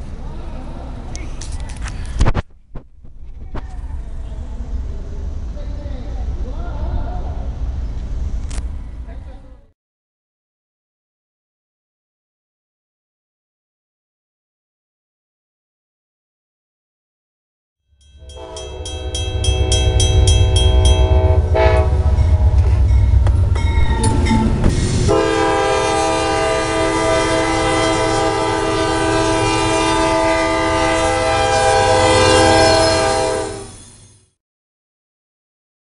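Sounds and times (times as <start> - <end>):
train rumble: 0.0 - 9.7, 18.2 - 34.4
rapid ringing: 18.0 - 21.5
train horn chord: 18.0 - 33.8.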